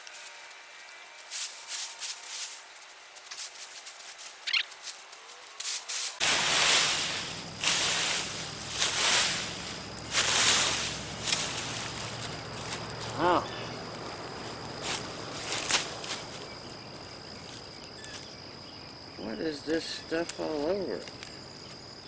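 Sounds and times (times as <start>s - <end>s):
soil and plants scraping and rustling: 0.0s - 18.4s
steady low hum: 6.2s - 19.5s.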